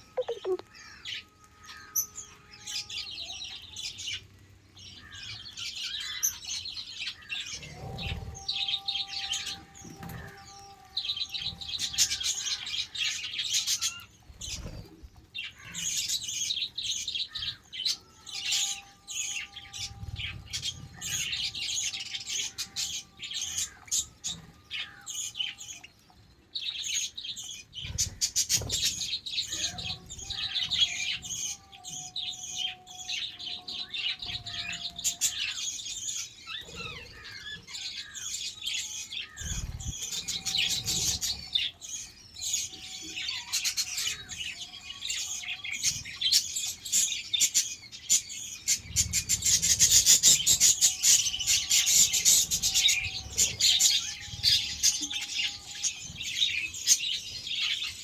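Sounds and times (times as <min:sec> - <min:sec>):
budgerigars chattering: 0:00.2 - 0:01.0.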